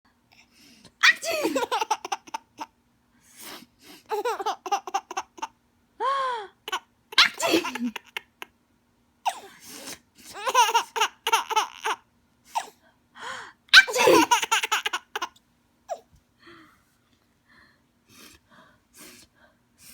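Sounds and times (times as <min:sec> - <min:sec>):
baby squealing: 0:01.0 - 0:01.4, 0:07.2 - 0:07.9, 0:13.8 - 0:14.8
baby giggling: 0:01.0 - 0:02.7, 0:04.1 - 0:05.5, 0:06.7 - 0:08.4, 0:10.4 - 0:12.0, 0:13.8 - 0:16.0
woman sneezing: 0:07.2 - 0:07.8.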